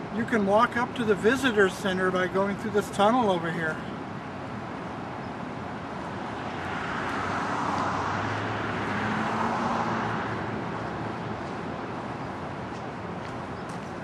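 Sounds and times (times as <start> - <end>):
car passing by: 6.2 - 13.1.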